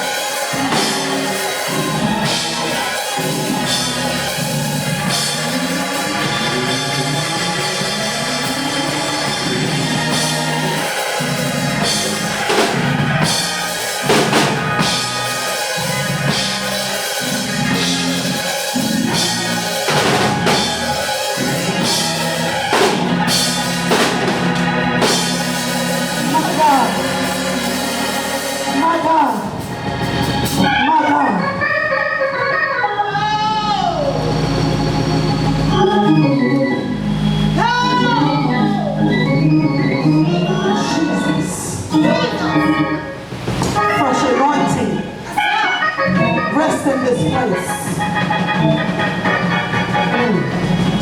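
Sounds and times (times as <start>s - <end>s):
drum and cymbal hits: 0.0s - 30.8s
bass line: 0.0s - 51.0s
church band music: 0.0s - 51.0s.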